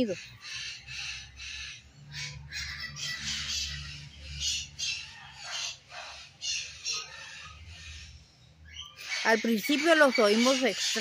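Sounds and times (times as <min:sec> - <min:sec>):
flock of birds squawking: 0:00.0 - 0:11.0.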